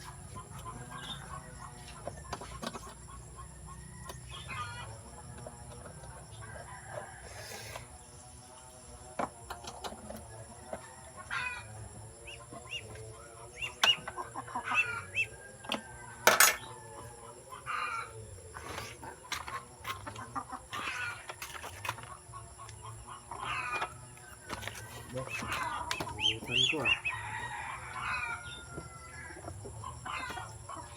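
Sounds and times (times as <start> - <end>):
chickens clucking: 0.0 - 30.9.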